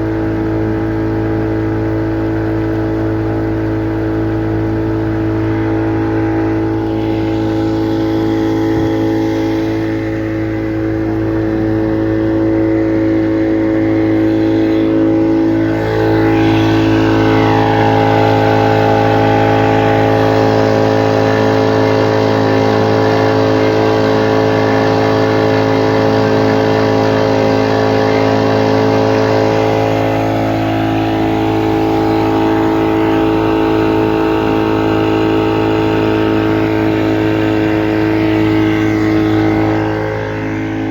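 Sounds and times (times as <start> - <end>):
motorboat engine running: 0.0 - 40.9.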